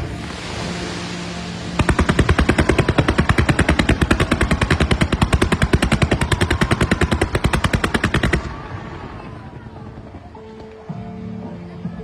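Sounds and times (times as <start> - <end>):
fireworks hissing crackle: 0.0 - 6.0
rapid string of firework bangs: 0.0 - 8.8.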